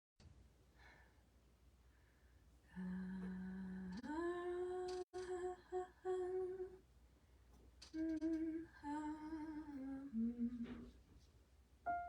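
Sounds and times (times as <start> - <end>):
person humming: 2.7 - 6.8, 7.8 - 10.9.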